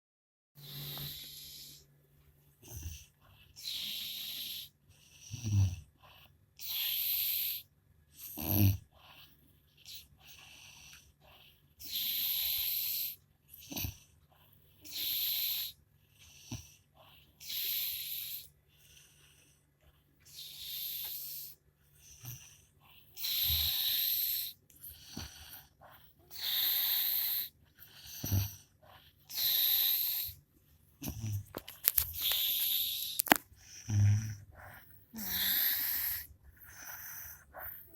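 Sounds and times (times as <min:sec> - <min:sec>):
woman snoring: 0:32.2 - 0:37.9.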